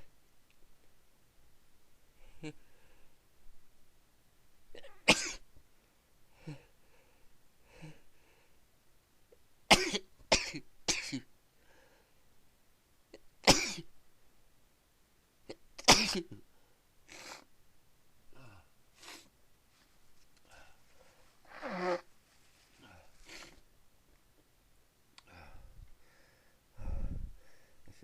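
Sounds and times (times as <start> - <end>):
person breathing: 2.2 - 3.2, 6.3 - 8.6, 11.6 - 12.2, 20.4 - 22.0, 22.7 - 23.6, 25.2 - 28.0
person sneezing: 21.5 - 22.1.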